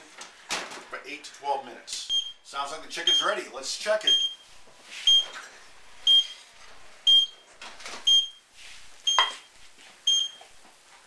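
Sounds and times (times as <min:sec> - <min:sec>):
cooking timer beeping: 0:02.1 - 0:02.4, 0:03.1 - 0:03.3, 0:04.1 - 0:04.4, 0:06.1 - 0:06.4, 0:07.1 - 0:07.4, 0:08.1 - 0:08.4, 0:09.0 - 0:09.5, 0:10.1 - 0:10.4.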